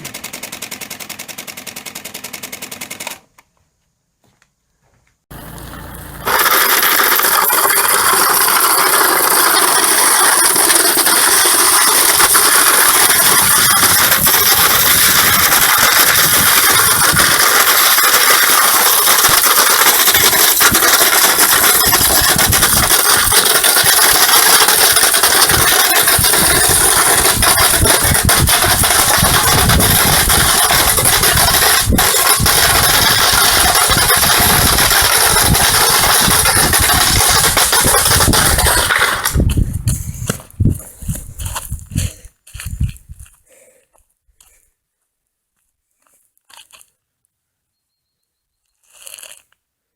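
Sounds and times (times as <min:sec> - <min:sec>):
rapid mechanical clatter: 0:00.0 - 0:03.3, 0:05.4 - 0:41.8
motor drone: 0:05.3 - 0:39.4.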